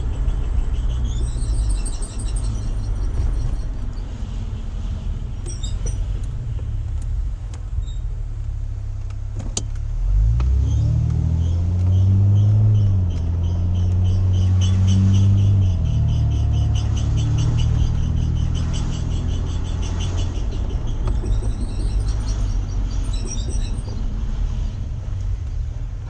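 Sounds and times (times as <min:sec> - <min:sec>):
brakes squealing in pulses: 0:00.0 - 0:08.8, 0:09.4 - 0:26.0
car engine and road noise: 0:00.0 - 0:26.0.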